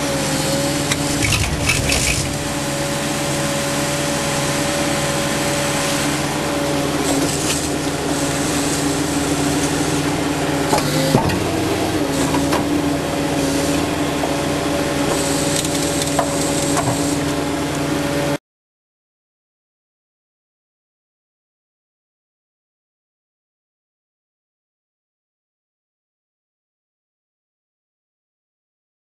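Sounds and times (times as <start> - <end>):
truck engine running: 0.7 - 13.3
creaking and scraping: 0.8 - 4.0.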